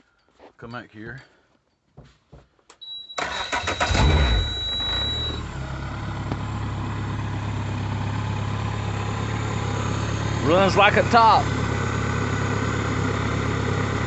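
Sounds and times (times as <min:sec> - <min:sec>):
high warning beep: 0:02.8 - 0:05.4
outboard engine starting and idling: 0:03.2 - 0:05.4.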